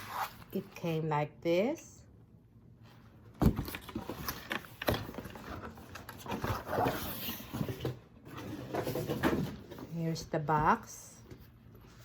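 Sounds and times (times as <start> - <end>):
cardboard and paper rustling: 3.4 - 12.0.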